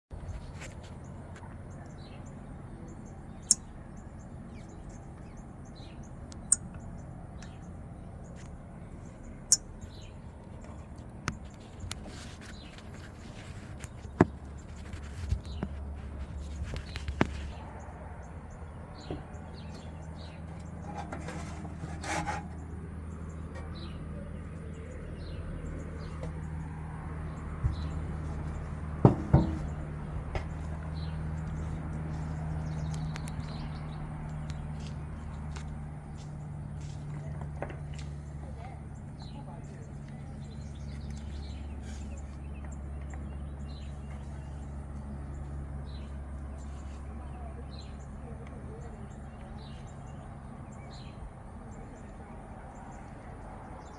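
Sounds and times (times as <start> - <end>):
small birds chirping: 0.1 - 53.9
sharp clicks and knocks: 29.0 - 30.5.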